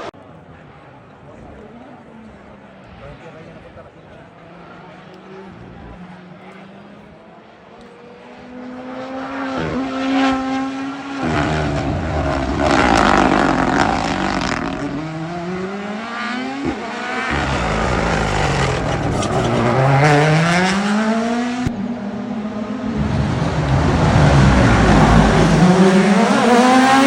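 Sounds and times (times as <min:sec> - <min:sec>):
rally car engine revving: 0:07.8 - 0:27.0
exhaust crack: 0:11.2 - 0:15.0, 0:16.6 - 0:21.8.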